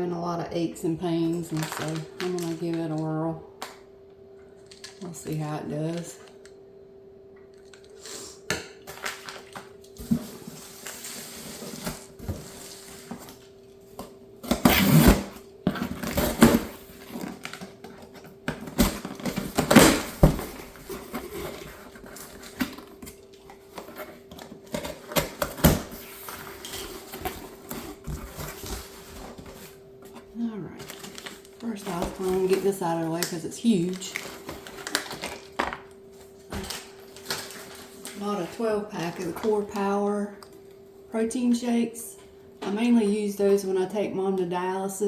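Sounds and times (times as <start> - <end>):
faint steady hum: 0.0 - 45.0
plastic and cardboard rustling: 1.2 - 3.0, 8.9 - 40.0.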